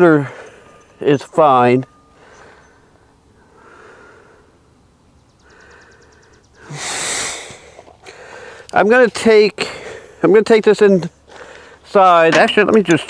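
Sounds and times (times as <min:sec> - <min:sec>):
loud hissing exhale: 0:06.6 - 0:08.6.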